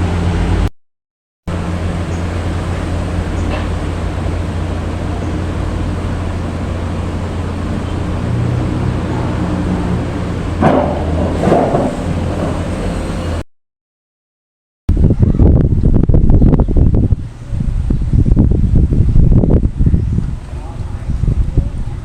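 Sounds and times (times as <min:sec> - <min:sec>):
heavy machinery engine humming: 0:00.0 - 0:00.7, 0:01.5 - 0:13.4.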